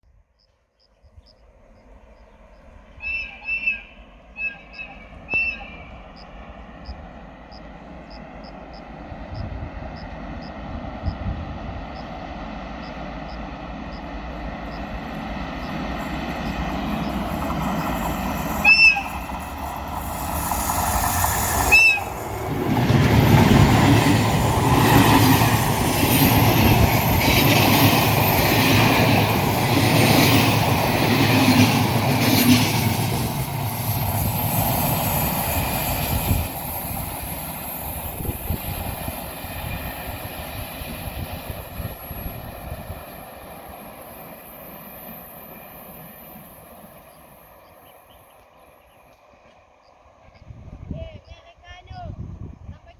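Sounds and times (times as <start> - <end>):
train rumble: 1.0 - 52.9
train horn toots: 3.0 - 6.0, 18.6 - 19.3, 21.7 - 22.2
train wheels clattering over rails: 12.4 - 48.3.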